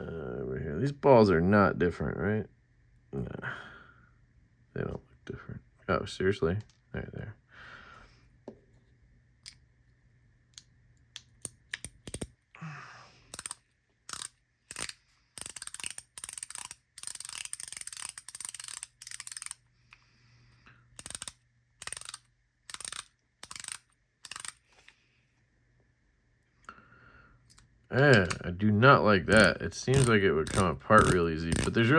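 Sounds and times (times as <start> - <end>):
fidget toy clicking: 10.6 - 12.4, 13.3 - 19.6, 21.0 - 24.6, 29.3 - 31.9.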